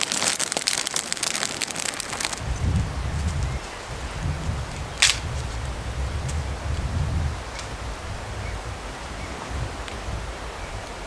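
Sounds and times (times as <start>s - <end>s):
steady noisy hiss: 0.0s - 11.0s
low wind rumble: 2.0s - 11.0s.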